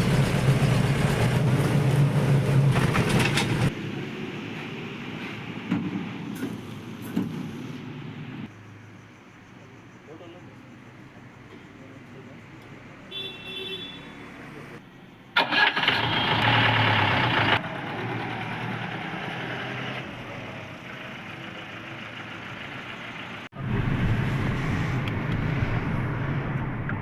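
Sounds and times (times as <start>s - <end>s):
diesel engine starting and running: 0.0s - 8.5s, 15.4s - 27.0s.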